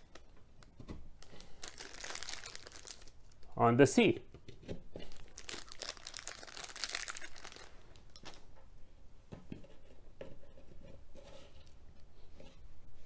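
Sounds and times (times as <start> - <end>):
crinkling and rustling: 0.0 - 3.6, 4.3 - 8.7.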